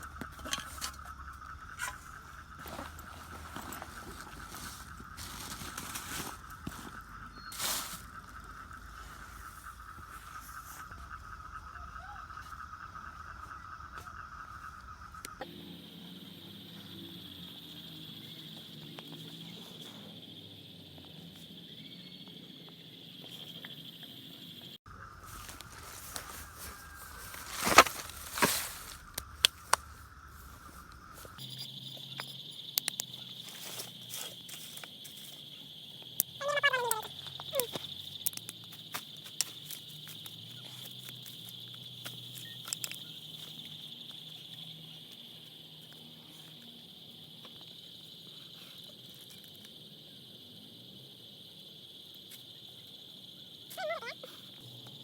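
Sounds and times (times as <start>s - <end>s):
high-pitched insect chirring: 21.6s - 45.9s, 53.2s - 55.0s.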